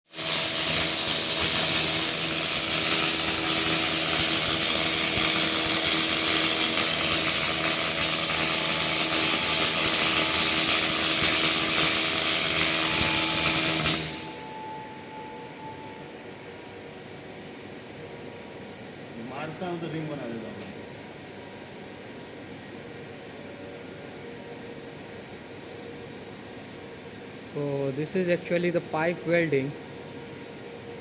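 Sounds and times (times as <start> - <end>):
welding arc hissing and crackling: 0.1 - 14.4
faint hum: 14.2 - 31.0.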